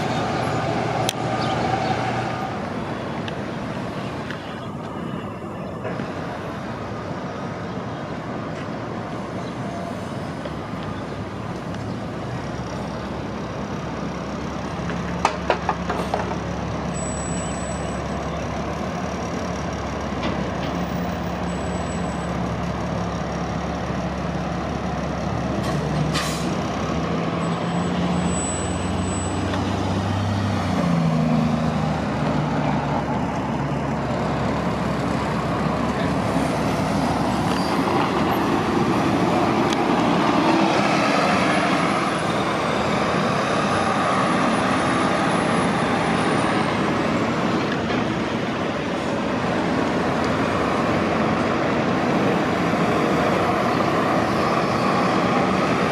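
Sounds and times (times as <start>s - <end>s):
bus engine revving away: 0.0s - 3.5s, 23.6s - 55.9s
bus engines running: 0.0s - 55.9s.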